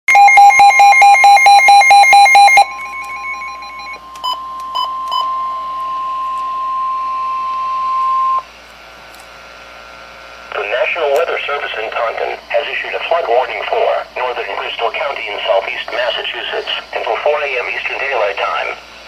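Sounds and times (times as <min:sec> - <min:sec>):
rapid electronic beeps: 0:00.1 - 0:08.4
short beeps: 0:00.1 - 0:08.4
steady high-pitched alert tone: 0:00.1 - 0:08.4.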